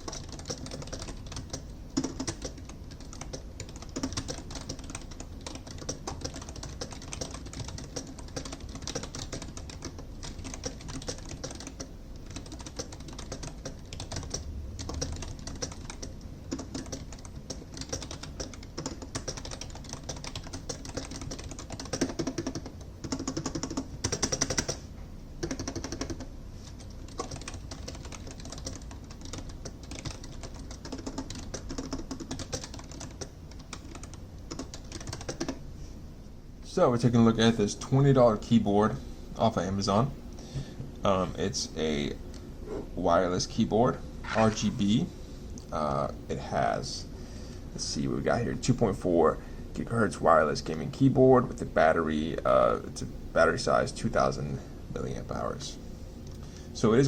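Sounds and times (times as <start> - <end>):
keyboard typing clacks: 0.0 - 24.8, 25.4 - 35.6.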